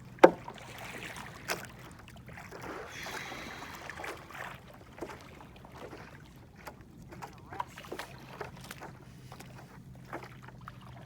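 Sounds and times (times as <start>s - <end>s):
water sloshing and splashing: 0.0s - 11.0s
board knocks and clicks: 0.2s - 0.4s.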